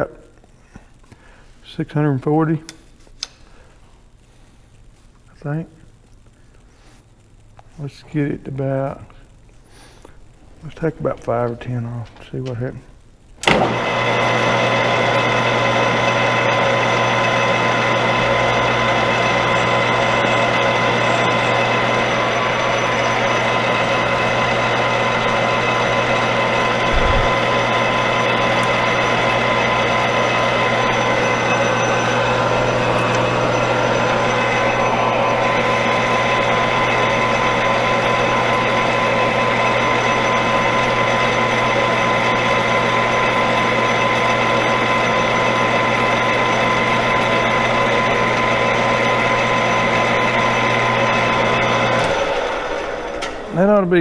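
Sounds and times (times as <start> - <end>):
metal lathe running: 13.4 - 54.0.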